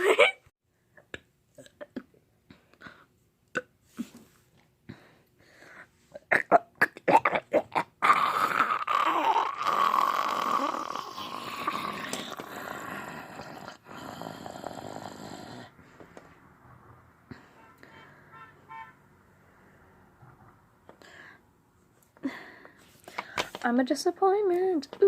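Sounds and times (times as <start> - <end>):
long rough burp: 6.2 - 15.7.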